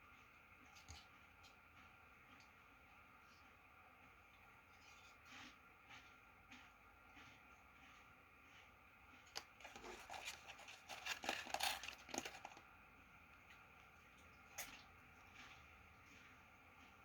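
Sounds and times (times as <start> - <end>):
snack packaging crinkling and tearing: 9.3 - 12.6.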